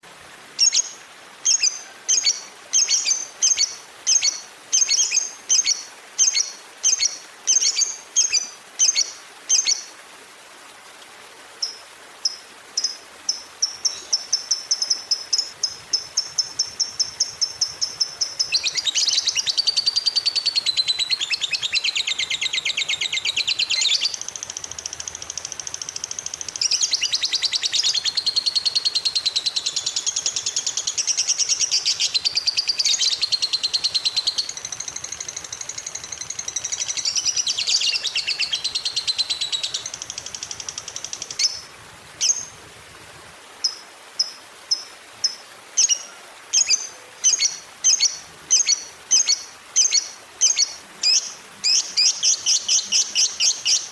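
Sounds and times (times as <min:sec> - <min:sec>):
lovebird chirping and trilling: 0:00.6 - 0:09.8, 0:13.6 - 0:30.6, 0:31.2 - 0:41.6.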